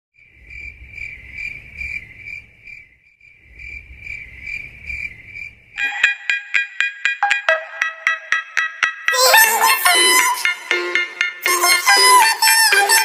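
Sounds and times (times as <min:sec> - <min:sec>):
cricket chirping: 0:00.2 - 0:05.8
plucky percussive music: 0:05.8 - 0:13.0.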